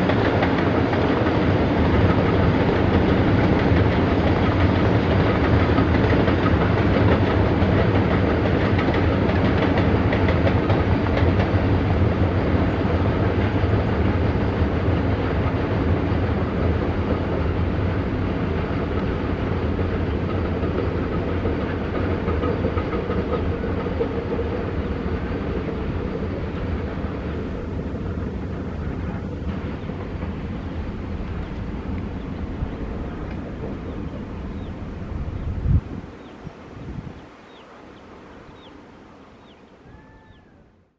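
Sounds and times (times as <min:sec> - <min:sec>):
train wagons rolling on track: 0:00.0 - 0:38.8.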